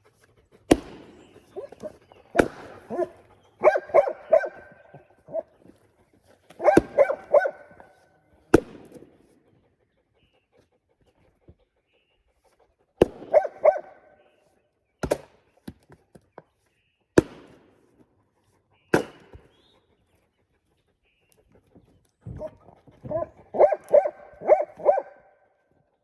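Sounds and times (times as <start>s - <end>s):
dog barking: 1.5s - 5.5s, 6.6s - 8.0s, 13.0s - 14.3s, 22.3s - 25.5s
sharp cracks: 2.4s - 2.9s.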